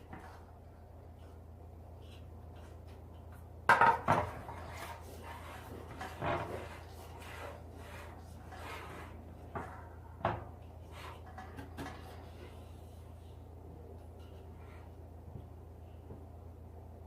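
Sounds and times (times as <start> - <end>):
steady low hum: 0.0 - 17.0
rubbing and scraping: 4.1 - 13.2.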